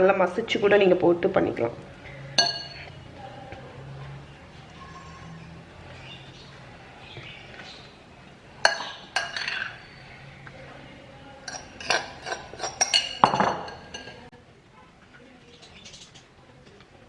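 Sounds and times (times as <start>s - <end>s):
utensils and dishes clinking: 2.2s - 3.1s, 8.6s - 10.6s, 11.4s - 14.3s.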